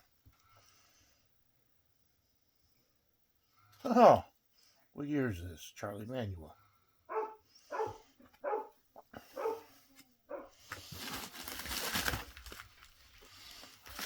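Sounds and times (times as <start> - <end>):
dog yipping: 7.1 - 8.8, 9.4 - 9.7, 10.3 - 10.5
packaging crinkling: 10.7 - 14.0.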